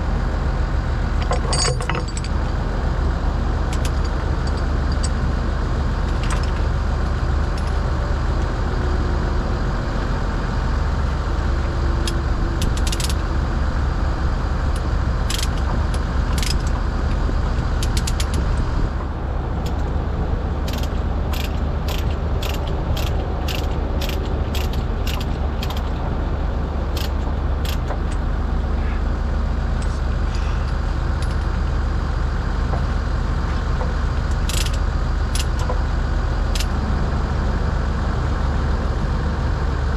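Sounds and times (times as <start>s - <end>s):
excavator diesel engine running: 0.0s - 39.9s
sharp clicks and clinks: 1.2s - 2.4s, 20.7s - 25.9s.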